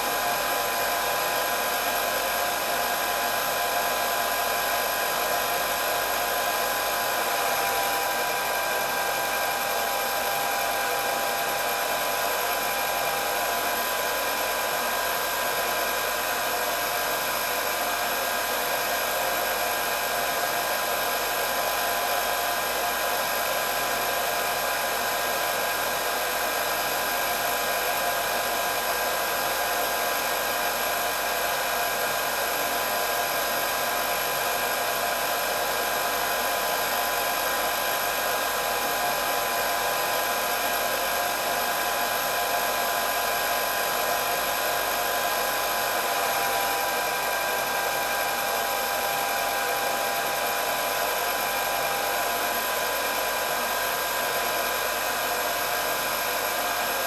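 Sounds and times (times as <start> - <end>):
hair dryer running: 0.0 - 57.0.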